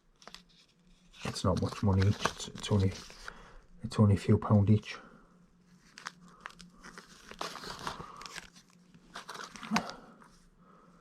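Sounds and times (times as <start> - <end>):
packaging crinkling and rustling: 0.0 - 3.4, 5.7 - 10.1.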